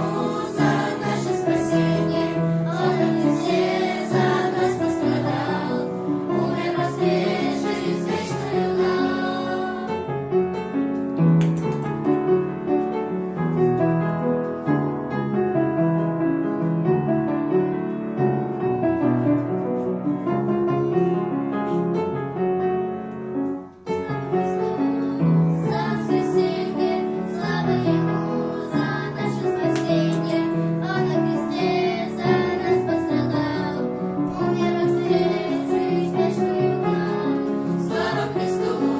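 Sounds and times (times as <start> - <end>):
high voices singing: 0.0 - 10.2, 23.9 - 38.9
keyboard accompaniment: 0.0 - 38.9.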